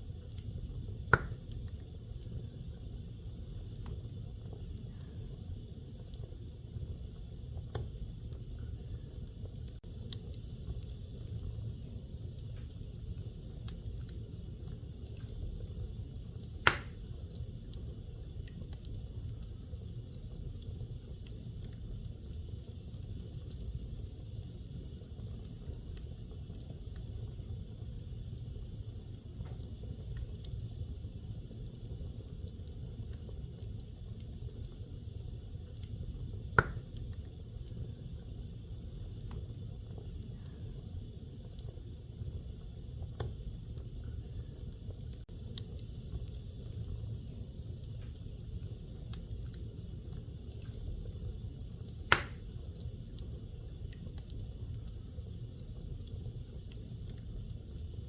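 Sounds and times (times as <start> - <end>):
sharp pops of fire: 0.0 - 2.4, 9.5 - 27.4, 31.2 - 40.0, 42.5 - 44.0, 45.0 - 58.0
fire burning: 0.0 - 58.0
fire crackling: 0.0 - 58.0.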